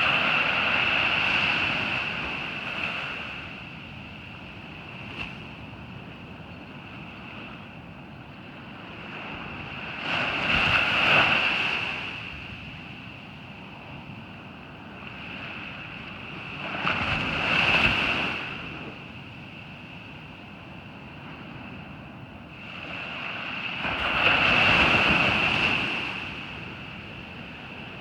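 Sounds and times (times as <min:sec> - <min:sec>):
steady sea noise: 0:00.0 - 0:28.0
waves breaking: 0:22.6 - 0:28.0.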